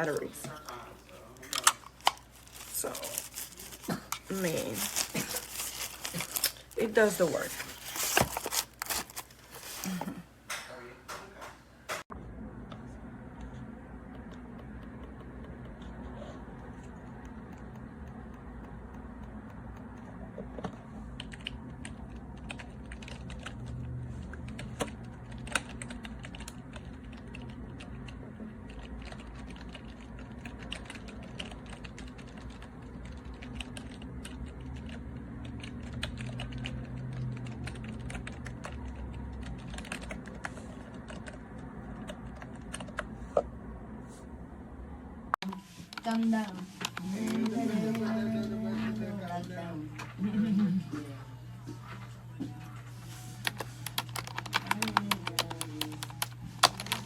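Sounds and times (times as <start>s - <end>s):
steady low hum: 0.0s - 57.0s
keyboard key clicks: 53.4s - 57.0s.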